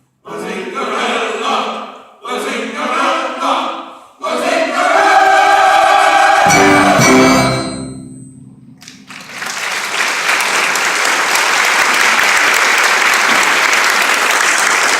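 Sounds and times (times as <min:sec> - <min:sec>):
orchestra and chorus chord: 0:04.7 - 0:09.4
audience applause: 0:08.8 - 0:14.9.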